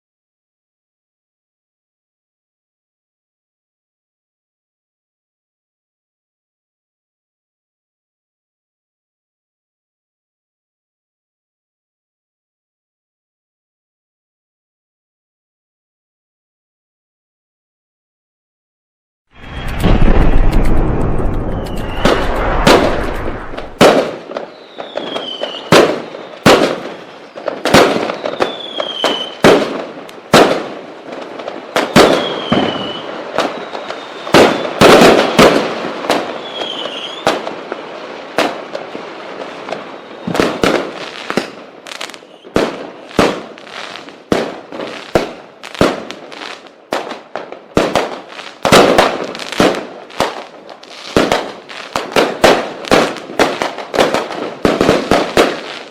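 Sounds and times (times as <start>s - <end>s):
fireworks whistles falling: 19.4s - 29.8s, 31.7s - 38.2s, 39.4s - 46.6s
firecracker pops: 19.4s - 37.7s, 39.7s - 55.9s
fireworks bangs: 19.4s - 55.9s.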